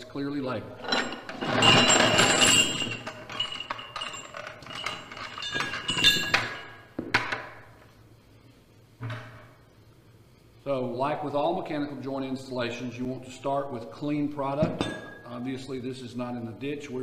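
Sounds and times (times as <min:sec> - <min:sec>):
metal hardware clinking: 0:00.8 - 0:07.3.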